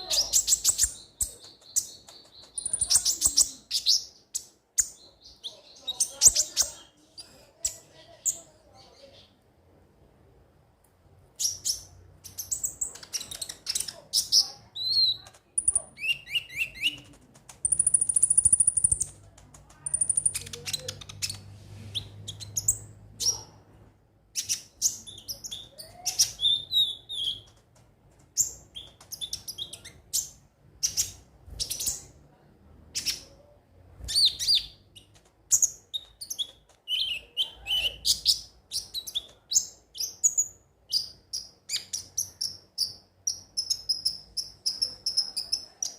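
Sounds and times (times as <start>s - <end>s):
sunbird singing: 0.0s - 7.1s, 17.6s - 19.1s, 19.8s - 21.4s.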